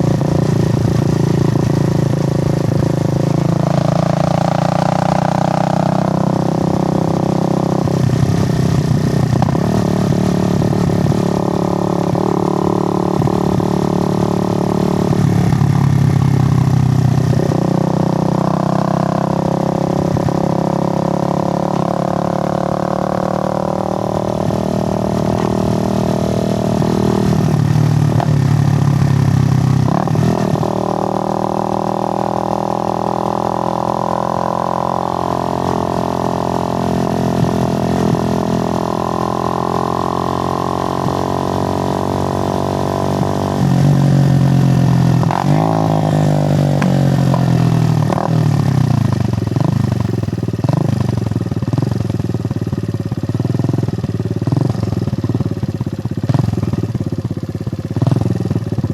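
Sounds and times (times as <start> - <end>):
motorcycle engine running: 0.0 - 58.9.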